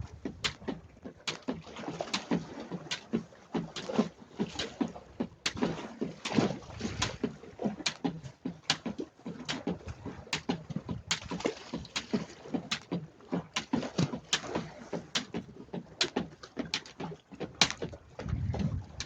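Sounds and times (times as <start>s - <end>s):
jump rope slapping floor: 0.2s - 19.0s
low thuds of landings: 17.4s - 19.0s.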